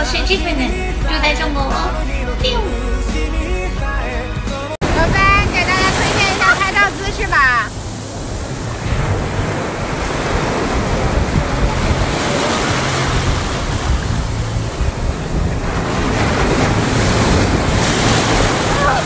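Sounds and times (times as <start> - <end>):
ocean surf washing in: 4.8 - 19.0
wind on microphone: 4.8 - 19.0.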